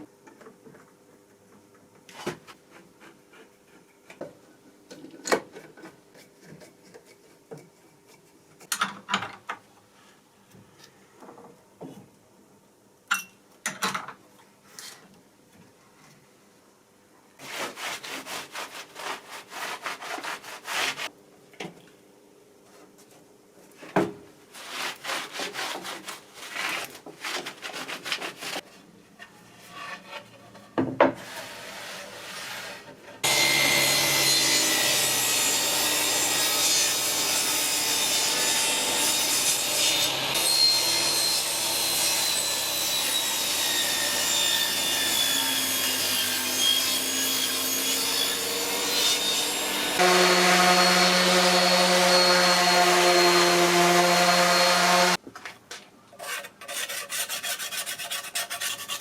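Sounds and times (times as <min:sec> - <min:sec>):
rubbing strokes on wood: 0:17.4 - 0:21.1.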